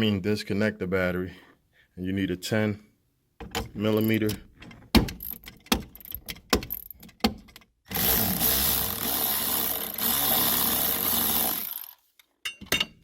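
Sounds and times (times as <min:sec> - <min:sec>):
handheld power tool running: 0:07.9 - 0:12.0.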